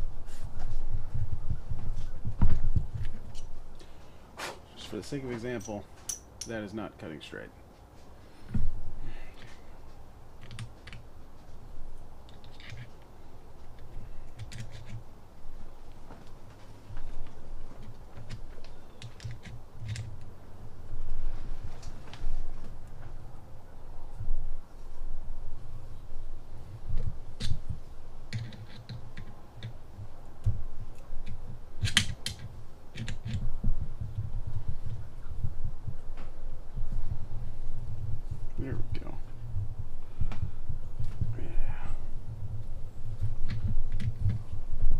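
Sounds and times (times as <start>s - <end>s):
thread tap clicking and scraping: 10.4s - 11.1s, 12.2s - 15.0s, 17.8s - 20.3s, 27.0s - 35.0s, 43.2s - 44.4s.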